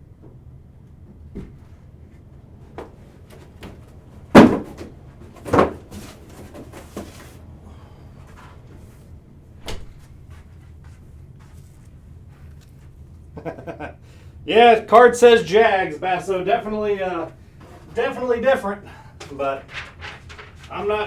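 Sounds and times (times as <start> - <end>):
objects knocking and thumping: 1.0 - 7.5, 18.9 - 20.9.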